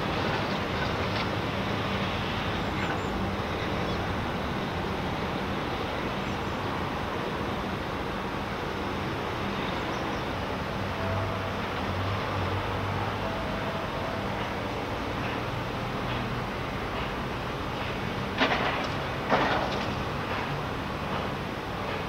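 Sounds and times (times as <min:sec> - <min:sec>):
low machinery hum: 0:00.0 - 0:08.6.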